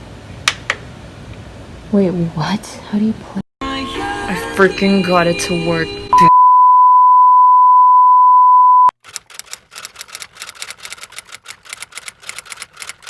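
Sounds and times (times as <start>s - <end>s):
high electronic beep: 6.1s - 8.9s.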